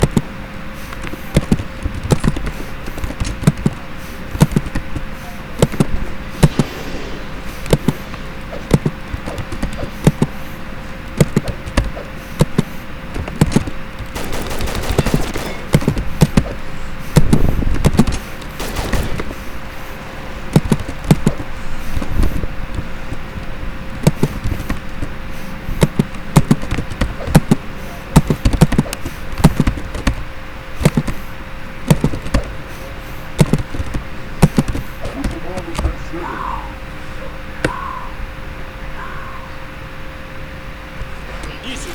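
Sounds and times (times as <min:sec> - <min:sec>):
engine running roughly: 0:00.0 - 0:30.2.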